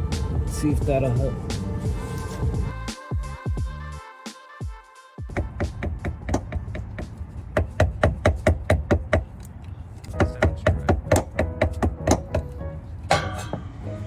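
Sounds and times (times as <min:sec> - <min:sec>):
rapid hammer blows: 0:05.2 - 0:09.3, 0:10.1 - 0:13.9.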